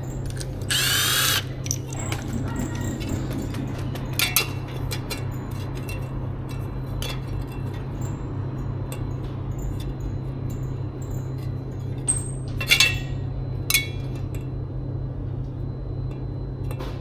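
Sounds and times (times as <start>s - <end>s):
low hum: 0.0s - 5.8s
hard objects clinking: 0.2s - 3.5s.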